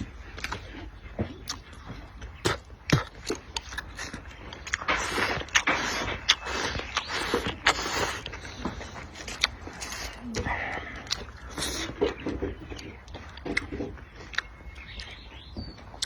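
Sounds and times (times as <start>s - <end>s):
clicking chewing sounds: 0.0s - 16.0s.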